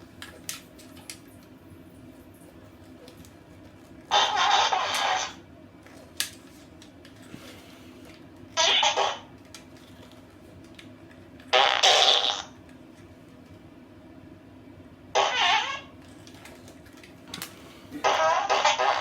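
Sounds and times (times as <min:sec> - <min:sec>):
toy fart noises: 0:04.1 - 0:05.4, 0:08.6 - 0:09.3, 0:11.5 - 0:12.6, 0:15.2 - 0:15.9, 0:18.0 - 0:19.0.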